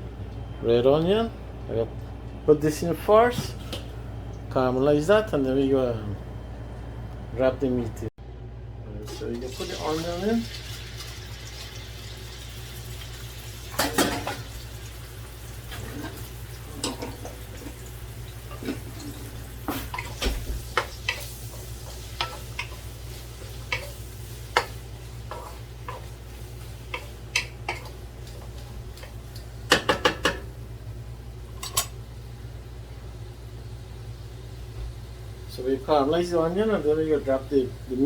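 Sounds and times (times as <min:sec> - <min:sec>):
onions frying: 0:09.3 - 0:35.4
spoon knocking on metal pot: 0:29.7 - 0:30.4.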